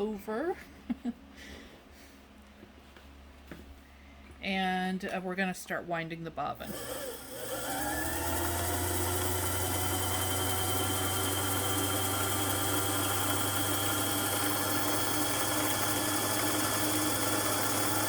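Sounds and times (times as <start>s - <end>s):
sewing machine motor humming: 6.6s - 18.0s.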